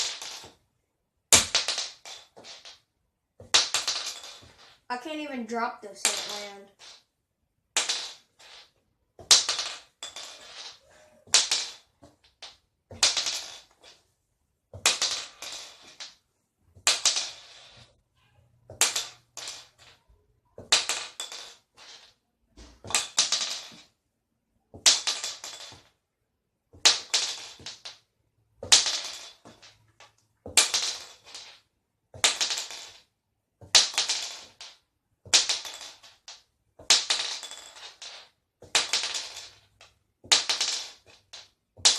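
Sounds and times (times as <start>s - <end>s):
shotgun shell clattering on hard surface: 3.5s - 4.8s, 7.8s - 14.0s, 20.6s - 22.1s, 26.8s - 28.0s, 28.6s - 31.6s, 32.2s - 33.1s, 33.7s - 41.9s.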